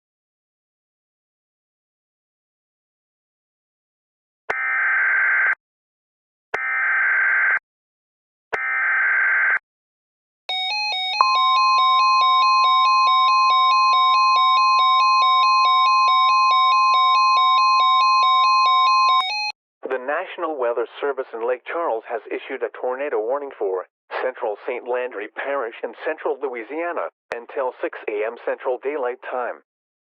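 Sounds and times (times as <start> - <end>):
steady high alert tone: 11.2 - 13.6.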